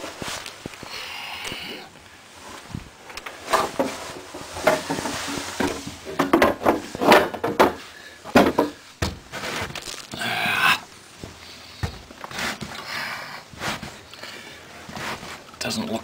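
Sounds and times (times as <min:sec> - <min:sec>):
snow shovels knocking and scraping: 0:03.4 - 0:09.8.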